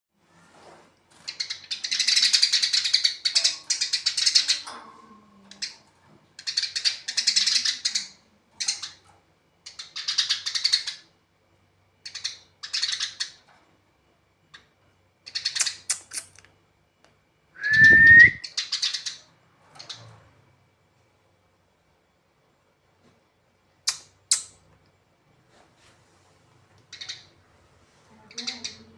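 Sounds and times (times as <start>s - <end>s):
sparrows chattering chirps: 1.2s - 4.6s, 9.7s - 11.1s, 12.1s - 13.4s, 15.3s - 16.2s, 26.9s - 27.4s, 28.3s - 28.9s
rising whistle: 17.6s - 18.4s.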